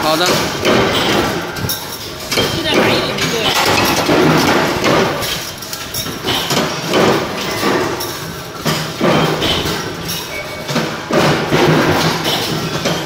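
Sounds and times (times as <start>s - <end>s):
wire bending machine knocks and clanks: 0.1s - 13.0s.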